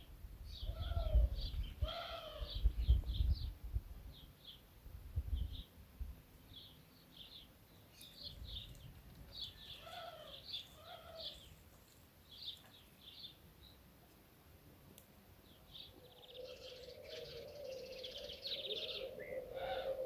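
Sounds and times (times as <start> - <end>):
lower louder bird calls: 0.0 - 4.7, 6.4 - 13.8, 15.4 - 20.0
small birds chirping: 6.4 - 13.9, 15.0 - 20.0.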